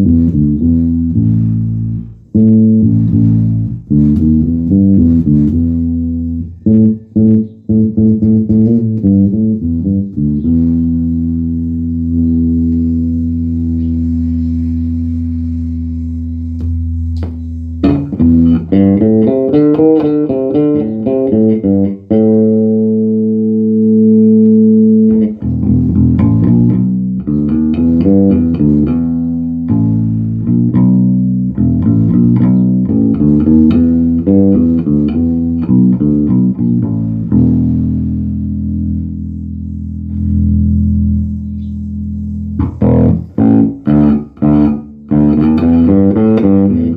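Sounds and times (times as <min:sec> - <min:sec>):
electric bass guitar: 0:00.0 - 0:46.9.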